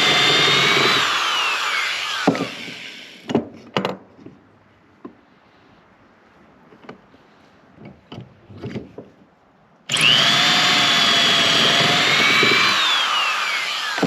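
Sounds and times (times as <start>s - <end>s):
power drill drilling into wood: 0.0s - 3.3s, 9.9s - 14.0s.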